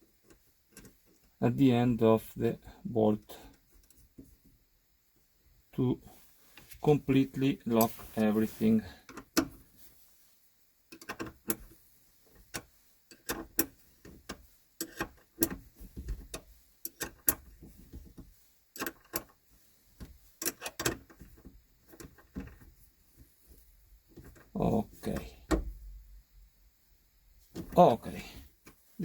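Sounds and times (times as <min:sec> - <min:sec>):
spanner clicking on nut: 0:10.9 - 0:11.6, 0:14.8 - 0:15.6, 0:16.3 - 0:17.4, 0:20.4 - 0:21.0.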